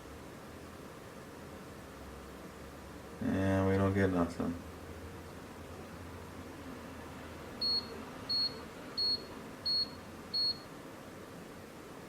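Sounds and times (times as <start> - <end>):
short high-pitched beeps: 7.6 - 10.7.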